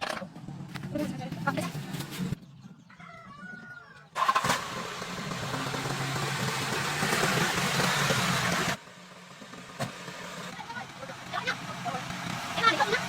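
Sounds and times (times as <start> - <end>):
car engine starting and running: 4.1 - 13.0.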